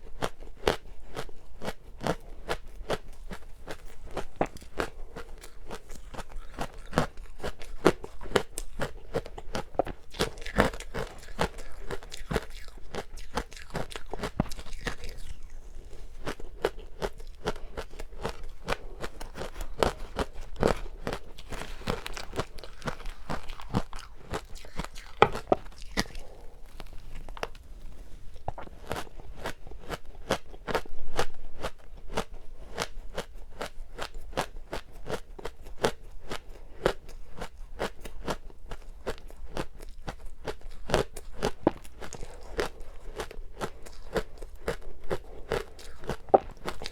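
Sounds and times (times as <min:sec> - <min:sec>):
crisp crunching of ice: 0:03.7 - 0:27.7.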